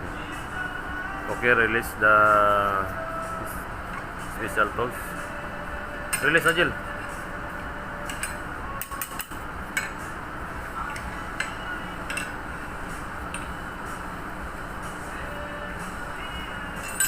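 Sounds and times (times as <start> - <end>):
steady background hum: 0.0 - 17.0
metal parts clinking: 16.8 - 17.0.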